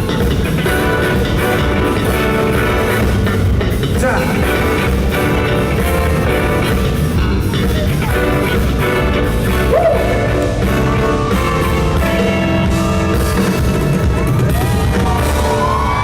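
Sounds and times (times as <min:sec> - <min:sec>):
live rock band music: 0:00.0 - 0:16.0
crowd whooping: 0:08.9 - 0:16.0.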